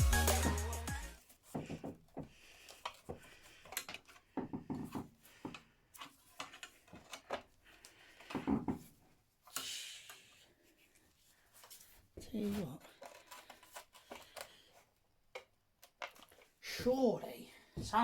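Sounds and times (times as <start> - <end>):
hand tools knocking and clicking: 3.8 - 5.6.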